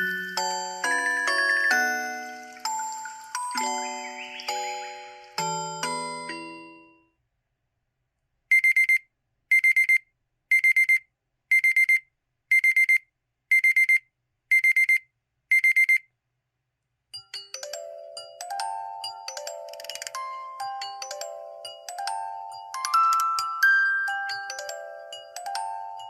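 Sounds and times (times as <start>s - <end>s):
phone chime melody: 0.0s - 7.0s, 17.5s - 26.0s
electronic alarm beeping: 10.6s - 16.0s.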